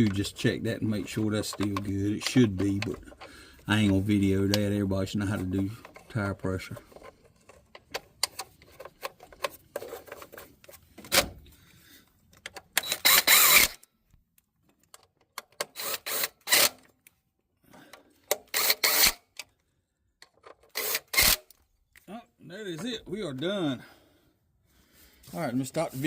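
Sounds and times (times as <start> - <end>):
tools clicking and knocking: 0.0 - 4.8, 5.7 - 11.3, 12.3 - 17.1, 17.9 - 22.0.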